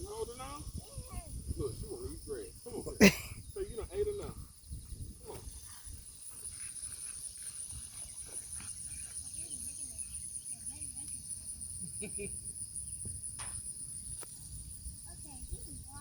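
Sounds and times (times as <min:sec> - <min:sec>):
crickets chirring: 0:00.0 - 0:16.0.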